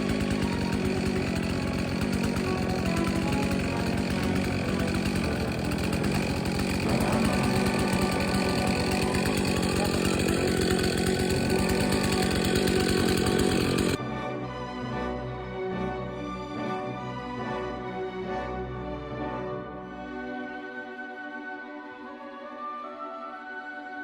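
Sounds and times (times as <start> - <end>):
chainsaw running: 0.0 - 14.1
music: 0.0 - 24.0.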